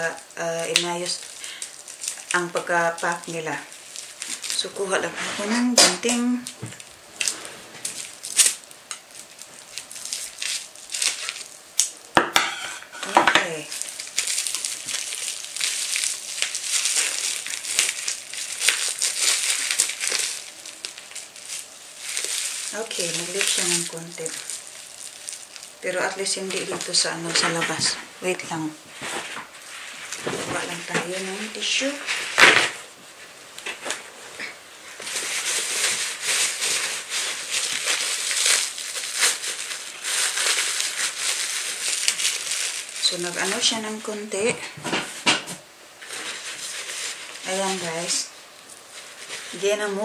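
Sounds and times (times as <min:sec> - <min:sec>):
plastic packaging crinkling: 0:00.0 - 0:50.0.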